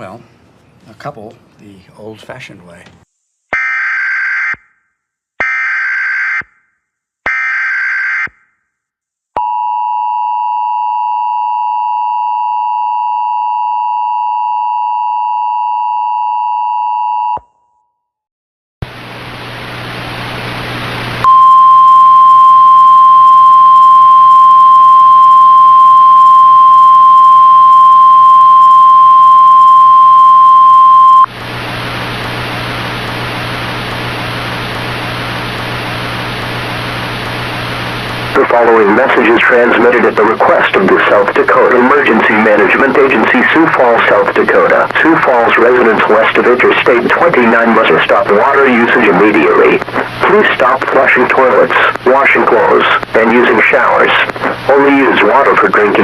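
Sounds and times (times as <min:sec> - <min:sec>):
static hiss: 0:18.8 - 0:21.3, 0:31.2 - 0:56.0
steady two-tone attention signal: 0:21.2 - 0:31.3.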